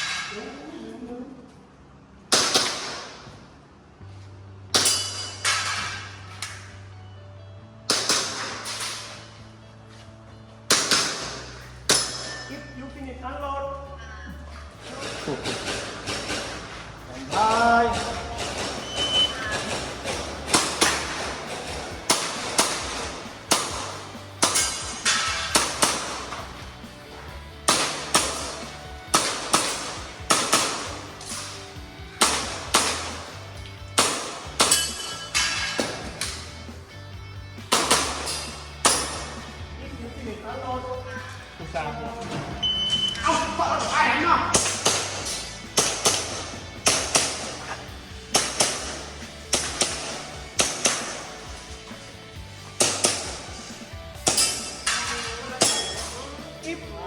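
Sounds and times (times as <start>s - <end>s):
airsoft pistol shots: 2.3s - 3.3s, 7.9s - 9.2s, 10.7s - 12.2s, 18.0s - 26.5s, 27.6s - 31.6s, 32.2s - 33.4s, 34.0s - 36.4s, 37.7s - 39.4s, 44.5s - 47.7s, 48.3s - 51.3s, 52.8s - 56.1s.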